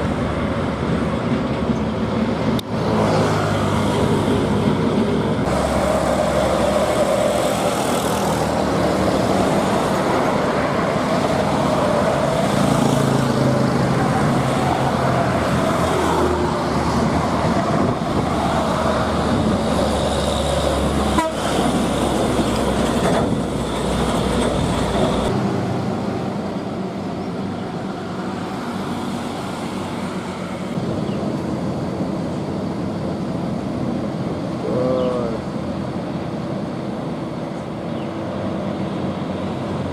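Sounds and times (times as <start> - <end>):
heavy engines rumbling under load: 0.0 - 39.9
horn toots: 21.1 - 21.6.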